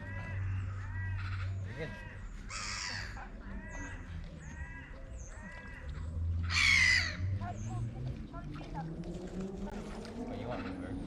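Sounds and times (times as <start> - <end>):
gulls squawking: 0.0 - 7.9.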